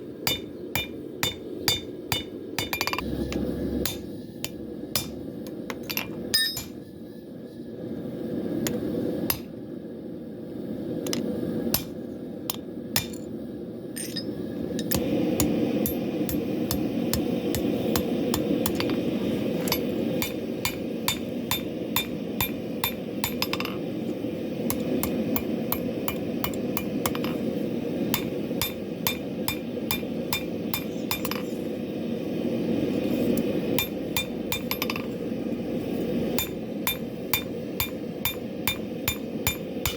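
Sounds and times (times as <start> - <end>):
low rushing noise: 2.1 - 12.4
hammer ringing on anvil: 5.8 - 6.8, 28.2 - 31.4, 36.4 - 39.9.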